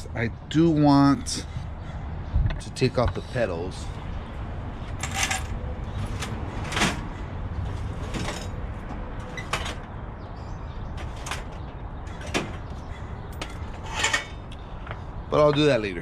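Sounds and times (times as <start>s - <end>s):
tools and bike parts knocking: 10.9s - 15.8s.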